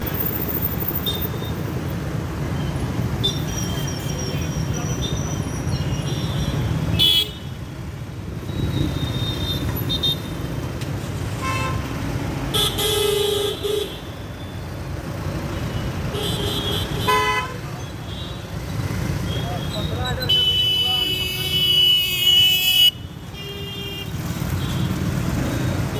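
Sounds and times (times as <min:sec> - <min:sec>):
traffic rumble: 0:00.0 - 0:25.9
vehicle horns honking: 0:03.2 - 0:07.6, 0:11.4 - 0:11.9, 0:12.5 - 0:14.2, 0:15.6 - 0:25.1.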